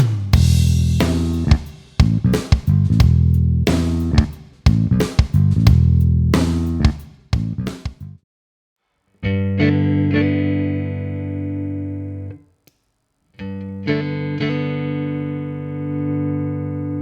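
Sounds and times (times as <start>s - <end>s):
compressed guitar notes and chords: 9.2s - 12.4s, 13.4s - 17.0s.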